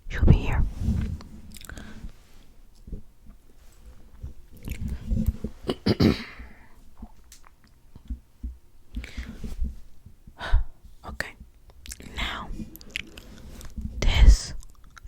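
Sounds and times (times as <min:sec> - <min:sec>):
soft clicks and wet ticks: 0:11.2 - 0:12.1.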